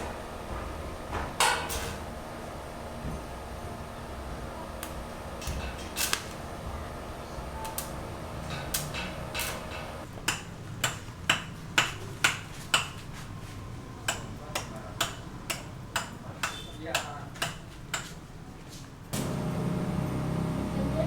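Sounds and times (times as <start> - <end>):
steady hum: 0.0 - 10.1, 19.2 - 21.0.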